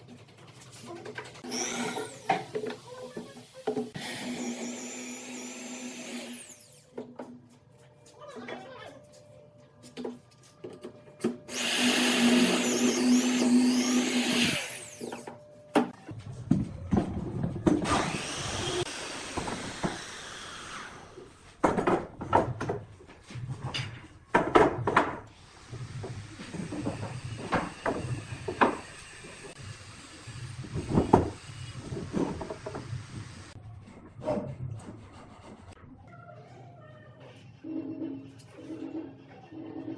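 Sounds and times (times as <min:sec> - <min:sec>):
power tool motor running: 0:01.4 - 0:02.8, 0:03.9 - 0:06.9, 0:11.5 - 0:15.4.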